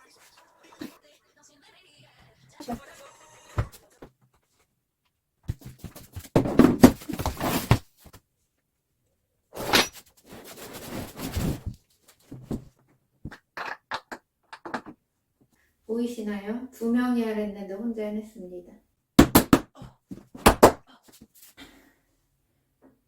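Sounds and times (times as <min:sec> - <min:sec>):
furniture parts knocking and rattling: 0:05.5 - 0:07.9.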